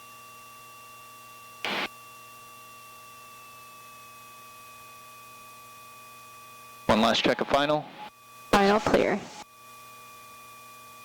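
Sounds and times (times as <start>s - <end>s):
intercom electrical hiss: 1.6s - 1.9s, 6.9s - 9.4s
static burst: 1.7s - 1.9s, 6.9s - 9.4s.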